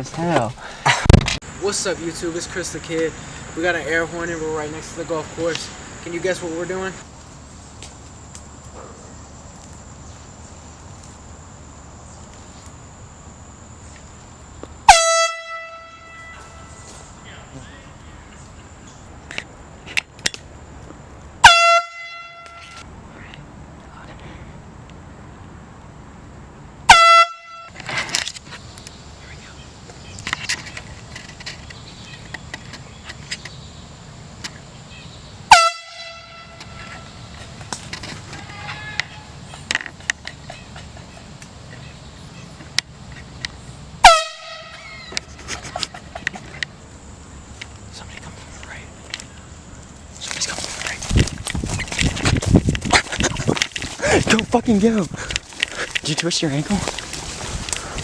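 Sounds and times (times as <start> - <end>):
air horn blast: 14.9 - 17.0, 21.4 - 22.8, 26.9 - 27.8, 35.5 - 37.3, 44.0 - 44.9.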